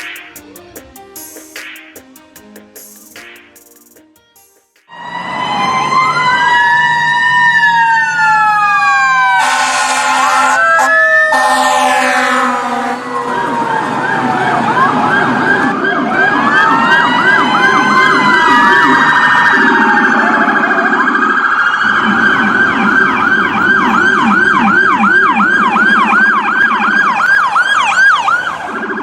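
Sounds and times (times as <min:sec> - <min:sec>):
emergency vehicle siren: 0:04.9 - 0:29.0.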